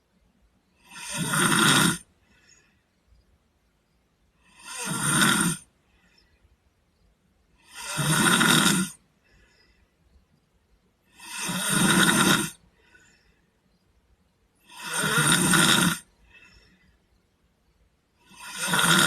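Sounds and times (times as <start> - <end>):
boy snoring: 0.8 - 2.1, 4.4 - 5.7, 7.6 - 9.0, 11.1 - 12.6, 14.6 - 16.1, 18.2 - 19.0.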